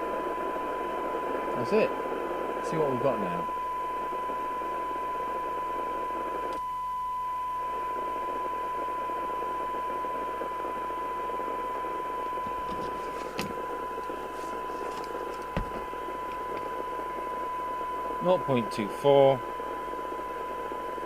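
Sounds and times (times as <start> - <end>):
radio hiss: 0.0 - 6.5, 7.8 - 21.0
steady test tone: 12.1 - 20.5.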